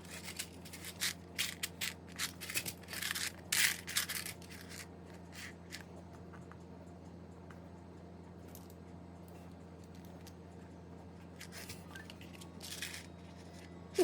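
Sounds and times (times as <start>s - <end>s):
steady low hum: 0.0s - 14.0s
plastic bricks clicking and rattling: 0.1s - 5.8s, 11.4s - 13.6s.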